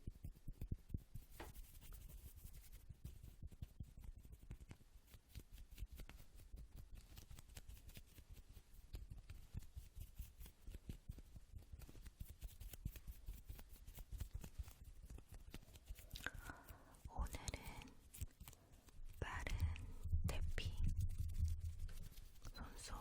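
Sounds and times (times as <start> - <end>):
rapid fingertip tapping: 17.5 - 22.6.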